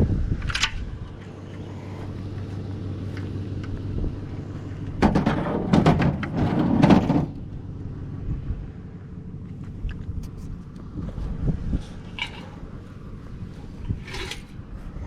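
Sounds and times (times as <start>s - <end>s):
vehicle engine idling: 0.0s - 15.0s
scrap metal clattering and banging: 4.9s - 7.6s, 11.7s - 15.0s.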